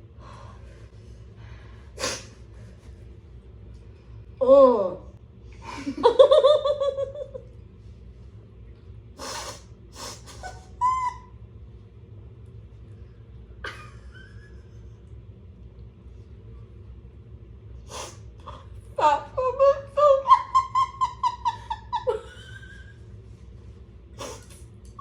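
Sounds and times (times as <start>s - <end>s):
person sniffing and breathing: 1.7s - 2.9s, 9.2s - 10.4s, 24.2s - 24.6s.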